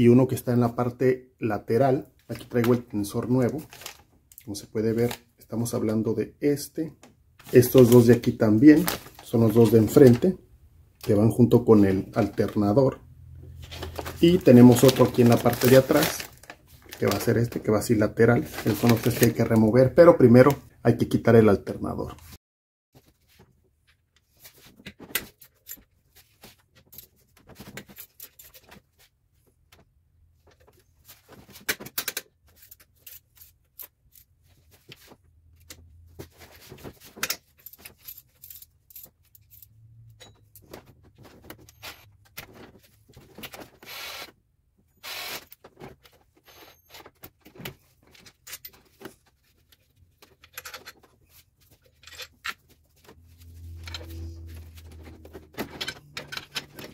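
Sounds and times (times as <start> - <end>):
metal hand tools clicking and clinking: 55.6 - 56.9.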